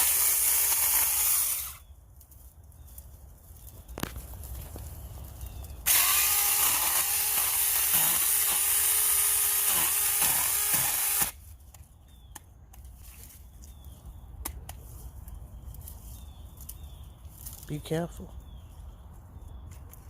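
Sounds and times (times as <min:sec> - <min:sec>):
electric chainsaw motor whine: 0:05.9 - 0:11.4.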